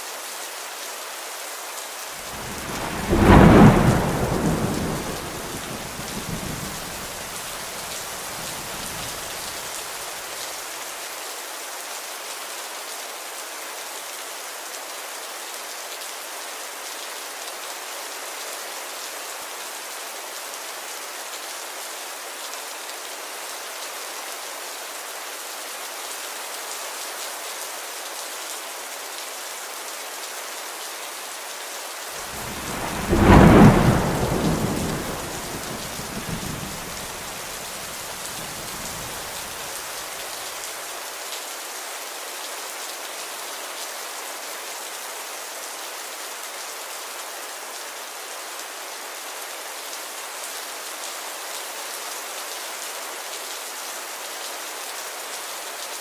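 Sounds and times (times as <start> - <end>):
steady rain: 0.0 - 56.0
thunder rumbling: 2.3 - 9.3, 32.2 - 39.6.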